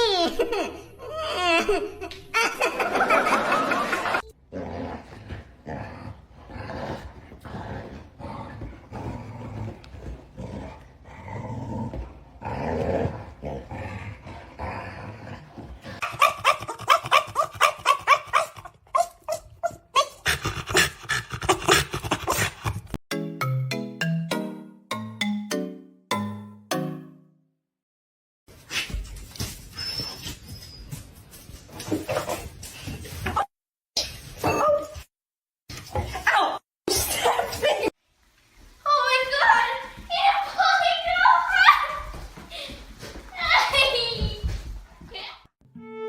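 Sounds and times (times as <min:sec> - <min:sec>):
dog growling: 0:04.5 - 0:16.0.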